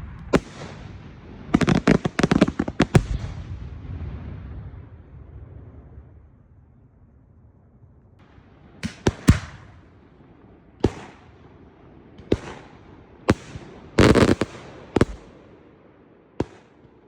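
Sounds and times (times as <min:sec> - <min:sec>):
firework bangs: 0:00.0 - 0:06.3, 0:08.2 - 0:11.5, 0:12.1 - 0:15.7.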